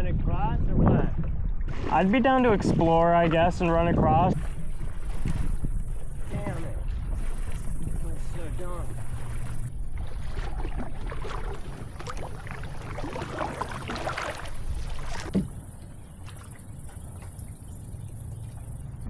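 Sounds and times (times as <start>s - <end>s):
water splashing: 1.5s - 19.0s
knocks against kayak hull: 15.1s - 15.6s.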